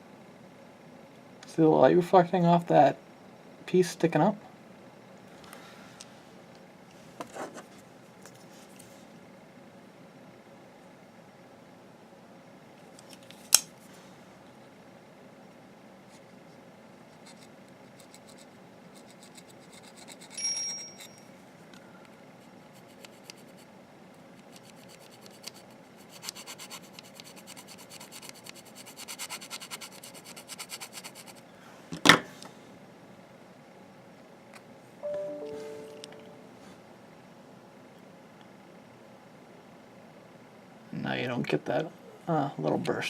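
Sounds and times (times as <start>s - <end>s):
metallic ping: 20.4s - 21.3s.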